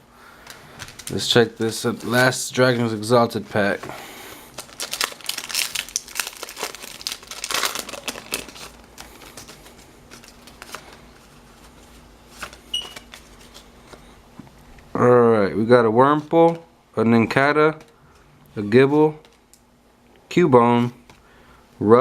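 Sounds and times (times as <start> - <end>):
foil wrapper crinkling and tearing: 0.5 - 2.3, 4.5 - 13.7.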